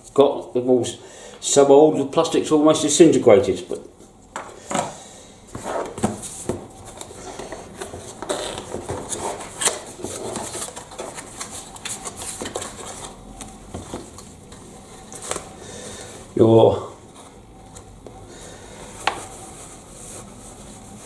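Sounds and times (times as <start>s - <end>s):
hands rubbing and rustling packaging: 5.5s - 16.4s, 17.0s - 21.0s.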